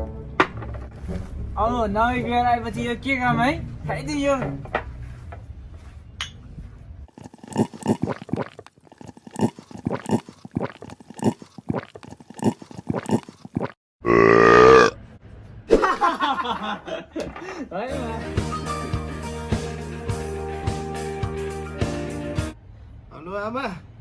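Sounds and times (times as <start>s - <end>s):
person gulping beer: 7.1s - 15.0s
loud belch: 14.0s - 15.0s.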